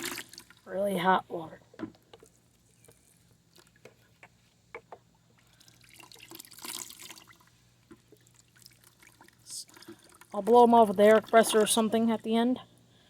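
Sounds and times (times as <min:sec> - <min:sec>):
water dripping and splashing: 0:05.4 - 0:11.8.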